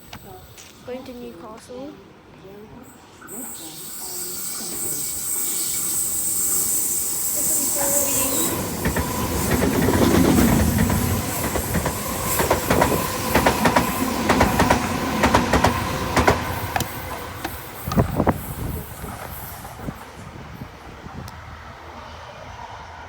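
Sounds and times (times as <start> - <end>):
train running hum: 2.1 - 23.0
train wheels clicking over rail joints: 4.7 - 20.1.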